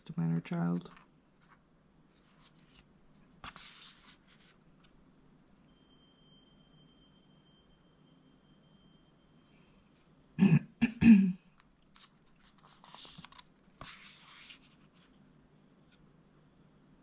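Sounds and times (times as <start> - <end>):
woman coughing: 10.4 - 11.4.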